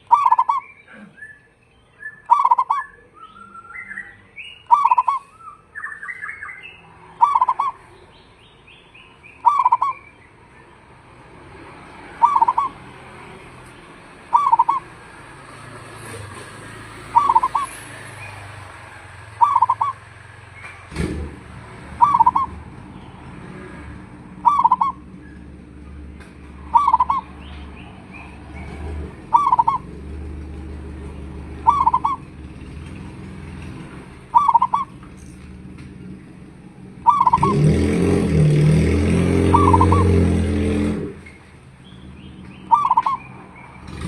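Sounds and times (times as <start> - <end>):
dove cooing: 0.0 - 1.2, 2.3 - 2.9, 4.7 - 5.3, 7.2 - 7.8, 9.4 - 10.0, 12.1 - 12.9, 14.2 - 15.0, 16.9 - 18.3, 19.4 - 20.0, 21.9 - 22.6, 24.4 - 25.2, 26.6 - 27.3, 28.1 - 29.9, 31.6 - 32.3, 34.3 - 35.0, 37.0 - 38.2, 39.3 - 40.3, 42.7 - 43.3.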